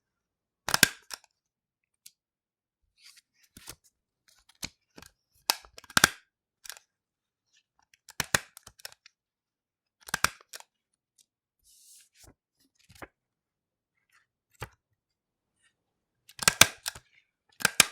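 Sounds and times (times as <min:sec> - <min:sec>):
stapler stapling paper: 0:16.4 - 0:17.0, 0:17.6 - 0:17.9.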